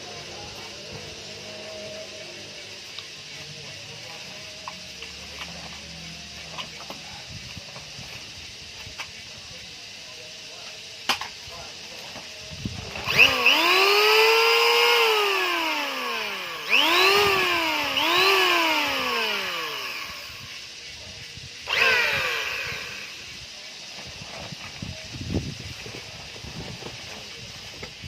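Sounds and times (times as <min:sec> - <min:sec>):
power tool motor whining: 0:12.6 - 0:20.8, 0:21.6 - 0:24.9.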